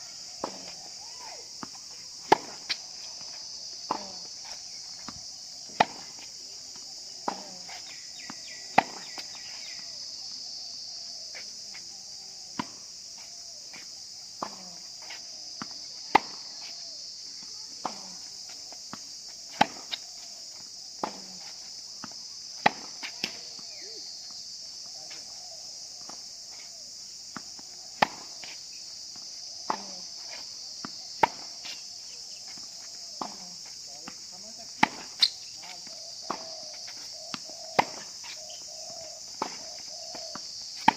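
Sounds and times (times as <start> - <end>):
insects droning: 0.0 - 40.9
tennis balls struck by rackets: 0.4 - 0.8, 1.6 - 9.6, 14.4 - 16.5, 17.8 - 18.2, 18.9 - 20.0, 21.0 - 23.6, 27.4 - 28.6, 29.2 - 31.8, 32.5 - 38.4, 39.0 - 40.9
tennis balls bouncing: 34.1 - 35.3, 36.2 - 38.4, 39.0 - 40.9.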